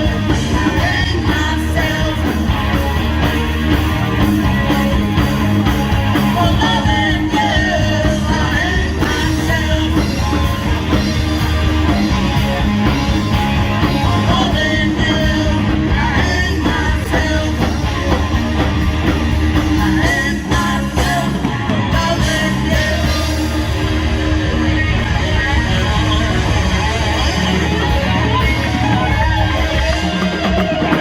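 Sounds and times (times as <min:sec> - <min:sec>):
person singing: 0:00.0 - 0:03.0, 0:06.1 - 0:10.7, 0:13.8 - 0:18.3, 0:19.6 - 0:24.0
live rock band playing: 0:00.0 - 0:31.0.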